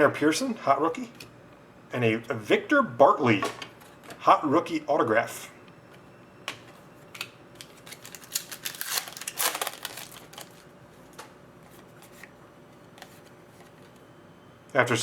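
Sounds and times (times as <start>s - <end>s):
cards clicking and rustling: 7.1s - 14.0s
wrapper crinkling and tearing: 7.2s - 10.7s.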